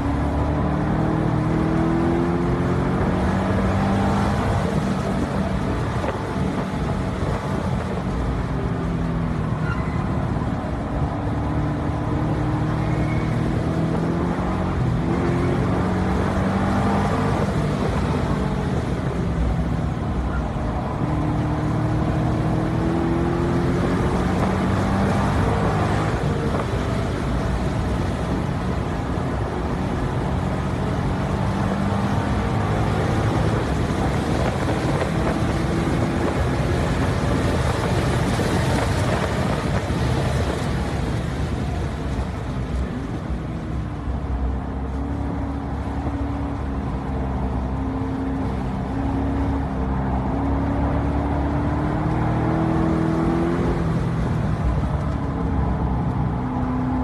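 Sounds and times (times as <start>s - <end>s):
road and wind noise: 0.0s - 57.0s.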